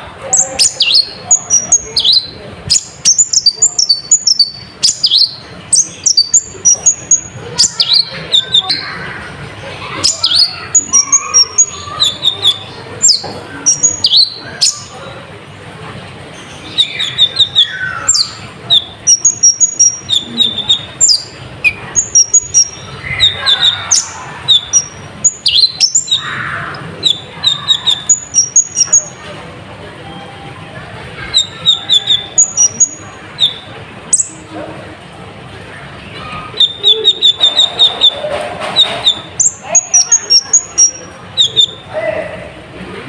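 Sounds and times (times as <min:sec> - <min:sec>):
sunbird singing high chirps: 0:00.2 - 0:09.1, 0:09.8 - 0:15.1, 0:16.5 - 0:29.2, 0:31.3 - 0:34.4, 0:36.5 - 0:38.2, 0:38.8 - 0:41.9.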